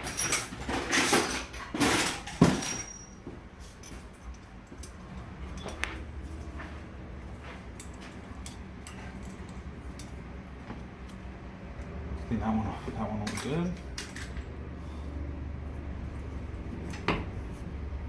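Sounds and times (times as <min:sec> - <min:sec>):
metal tool clinks and clicks: 0:00.0 - 0:03.2, 0:07.8 - 0:10.3, 0:13.2 - 0:14.5.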